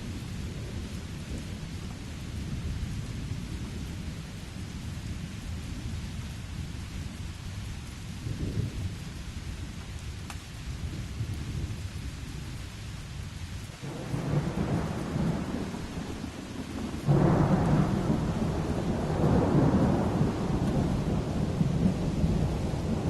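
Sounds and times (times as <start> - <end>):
steady rain: 0.0 - 23.0
low rumbling thunder: 13.8 - 23.0.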